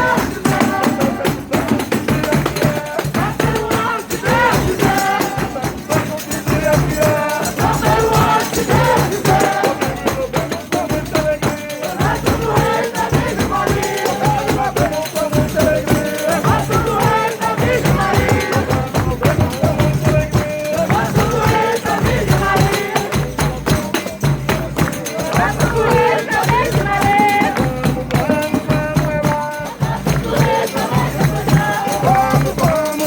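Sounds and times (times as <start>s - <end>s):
folk music voices and instruments: 0.0s - 33.0s
tambourine jingles: 0.0s - 33.0s.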